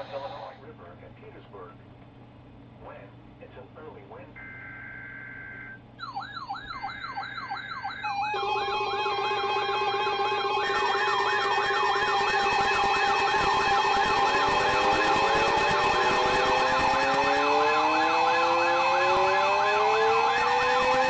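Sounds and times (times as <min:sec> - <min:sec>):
steady attention tones: 0:04.4 - 0:21.0
warbling siren: 0:04.4 - 0:21.0
rising siren wails: 0:05.6 - 0:21.0.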